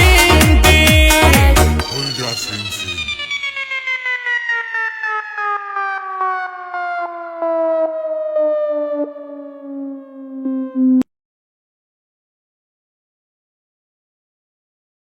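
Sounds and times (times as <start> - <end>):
stuttering falling siren tone: 1.8 - 11.1.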